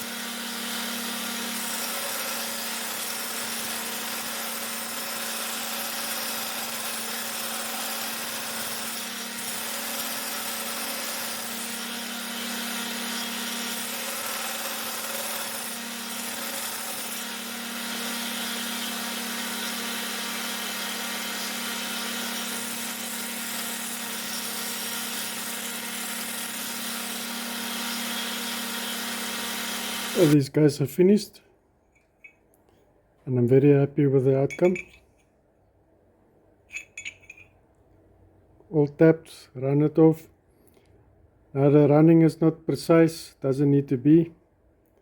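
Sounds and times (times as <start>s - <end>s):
electric machine humming: 17.1s - 30.4s.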